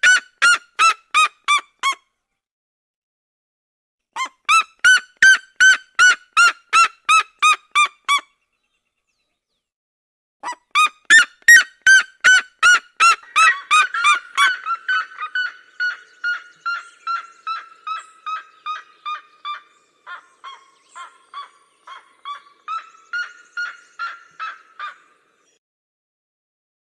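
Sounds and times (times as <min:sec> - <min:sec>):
birds calling in duet: 0:11.1 - 0:25.6.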